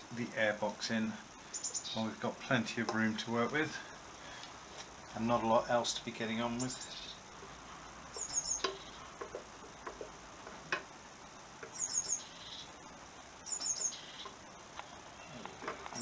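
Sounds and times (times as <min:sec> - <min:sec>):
small bird chirping: 0:01.4 - 0:02.2, 0:06.5 - 0:10.2, 0:10.8 - 0:16.0
light clicks and knocks of parts: 0:08.2 - 0:10.9, 0:14.2 - 0:16.0.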